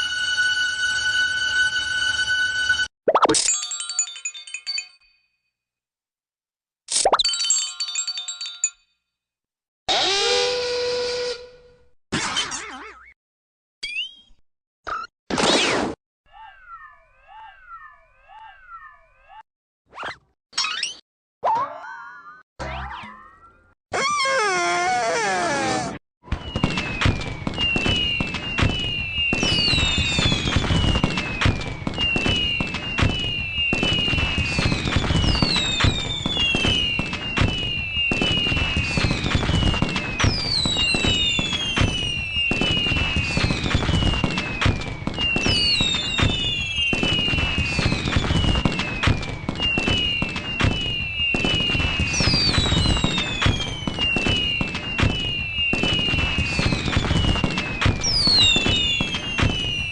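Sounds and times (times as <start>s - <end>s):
falling firework whistles: 10.0s - 11.8s, 25.5s - 59.9s
firework crackling and bangs: 26.2s - 59.9s.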